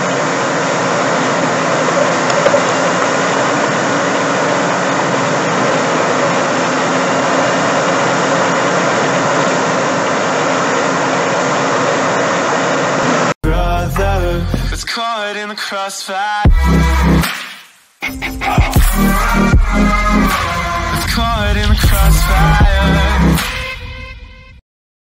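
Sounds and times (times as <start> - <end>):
heavy machine engine droning: 0.0 - 14.9, 18.8 - 24.2.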